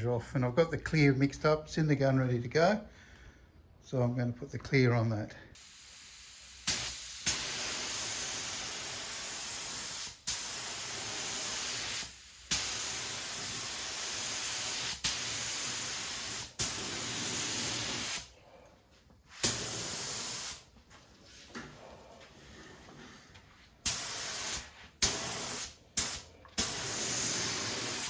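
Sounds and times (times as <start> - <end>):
paint spray gun hissing: 5.6 - 18.3, 19.3 - 20.7, 23.8 - 28.0
spray gun trigger puff: 5.6 - 18.3, 19.4 - 20.6, 23.8 - 28.0.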